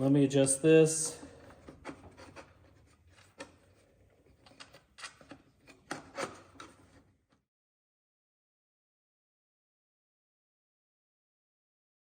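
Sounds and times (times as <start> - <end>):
wooden and plastic parts knocking: 1.2 - 7.2.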